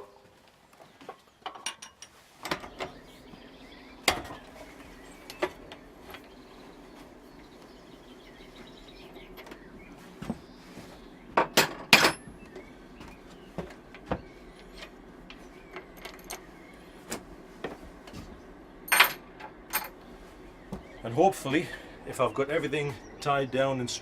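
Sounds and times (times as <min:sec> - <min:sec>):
tools and metal parts clinking: 0:01.4 - 0:03.0, 0:11.5 - 0:12.3, 0:14.6 - 0:16.5, 0:18.9 - 0:20.0.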